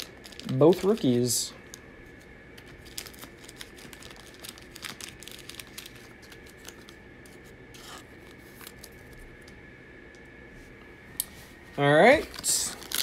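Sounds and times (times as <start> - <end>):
cards and wrappers rubbing: 2.6 - 9.0, 12.2 - 13.0.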